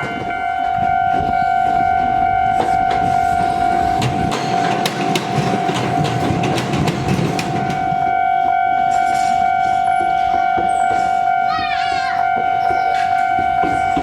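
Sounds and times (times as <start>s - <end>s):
railroad crossing warning signal: 0.0s - 14.0s
train wheels clicking over rail joints: 2.4s - 8.1s, 8.9s - 14.0s.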